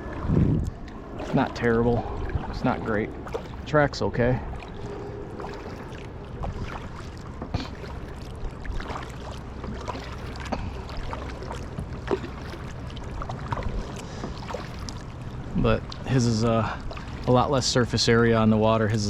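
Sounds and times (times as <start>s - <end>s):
wind rumble on microphone: 0.0s - 9.0s
paddle splashing: 0.0s - 19.0s
water lapping against hull: 0.0s - 19.0s.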